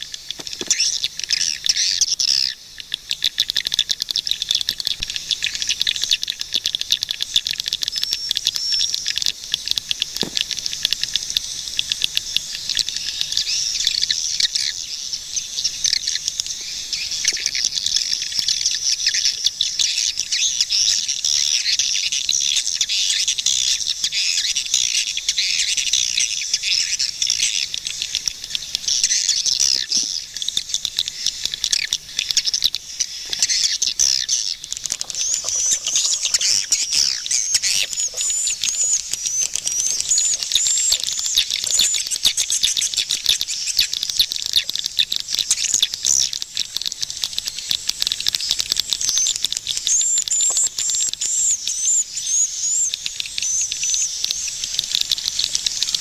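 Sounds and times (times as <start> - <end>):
swiftlets chirping: 27.4 - 46.3.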